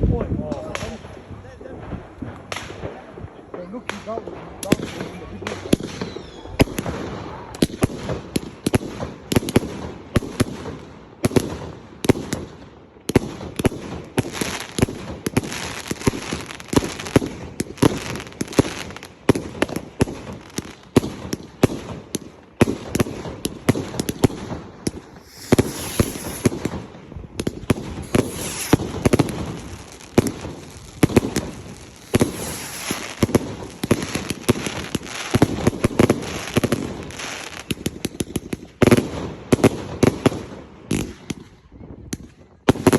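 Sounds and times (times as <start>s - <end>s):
fireworks bangs and pops: 0.0s - 42.9s
fireworks hissing crackle: 2.0s - 9.5s, 13.2s - 41.2s.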